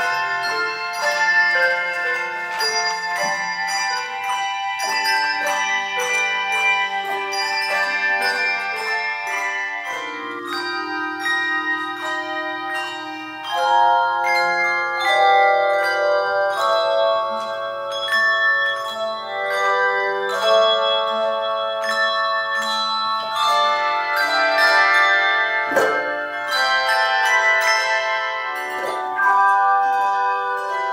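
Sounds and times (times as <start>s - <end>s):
handbell choir playing: 0.0s - 30.9s
long held low bell: 0.0s - 30.9s.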